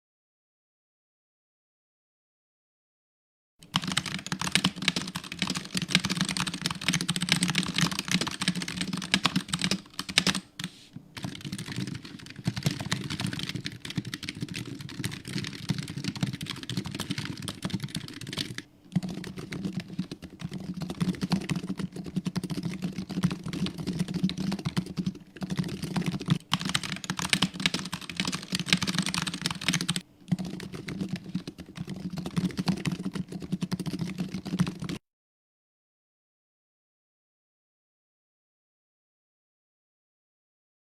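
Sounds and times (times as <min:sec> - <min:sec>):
keyboard typing clatter: 0:03.6 - 0:10.6, 0:11.2 - 0:35.0.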